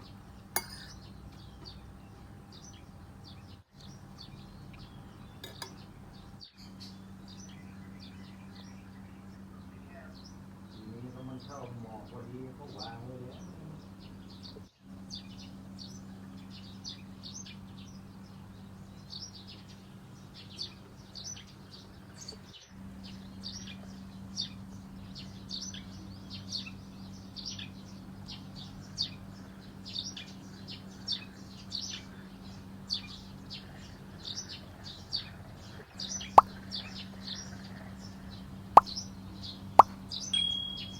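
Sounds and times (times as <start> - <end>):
small birds chirping: 0.0 - 40.9
steady low hum: 19.9 - 40.9.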